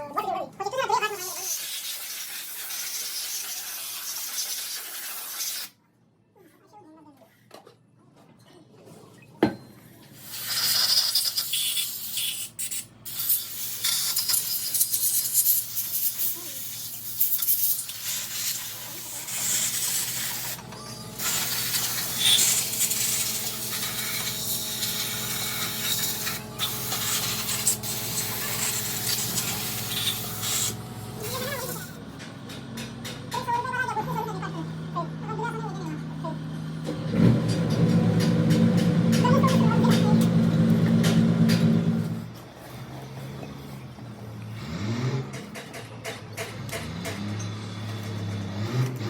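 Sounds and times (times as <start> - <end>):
loud spraying hiss: 13.1 - 20.6, 21.2 - 30.8
low machine hum: 20.1 - 42.4.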